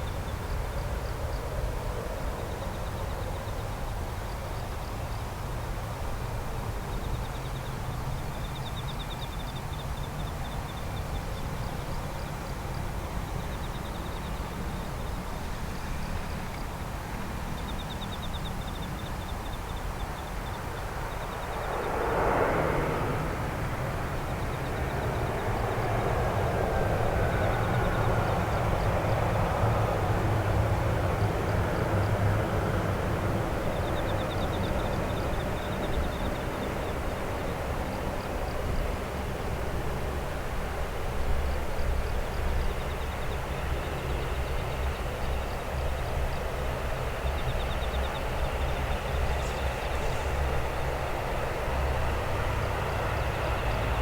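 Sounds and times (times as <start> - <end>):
jet airliner engines passing: 19.8 - 54.0.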